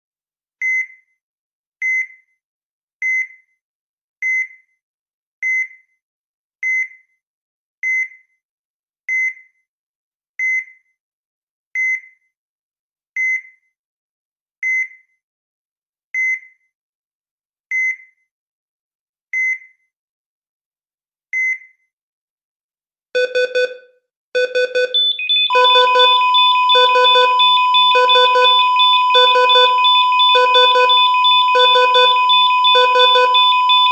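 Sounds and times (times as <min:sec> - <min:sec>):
heart monitor beeping: 0:23.2 - 0:23.8, 0:24.4 - 0:33.9
rapid pulsing alarm: 0:24.4 - 0:33.9
steady flatline tone: 0:25.0 - 0:33.9.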